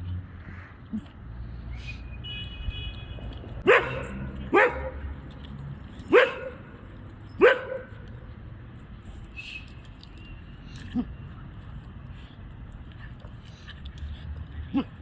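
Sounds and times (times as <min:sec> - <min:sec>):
dog barking: 0:03.6 - 0:05.1, 0:06.1 - 0:06.8, 0:07.4 - 0:08.0.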